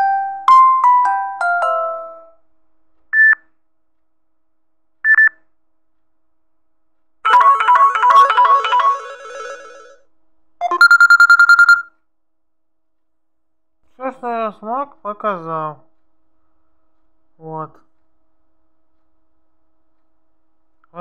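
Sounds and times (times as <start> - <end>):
chiming ringtone melody: 0.0 - 2.4, 7.3 - 10.0, 10.6 - 11.9
melody of repeating notes: 7.3 - 10.0
short high beeps: 10.6 - 11.9.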